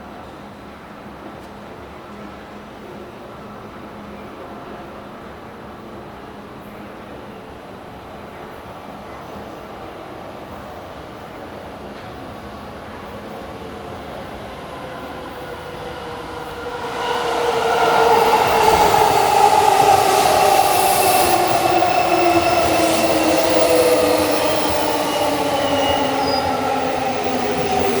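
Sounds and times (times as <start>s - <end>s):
electric train rumble: 12.4s - 28.0s
train motor whine: 14.6s - 28.0s.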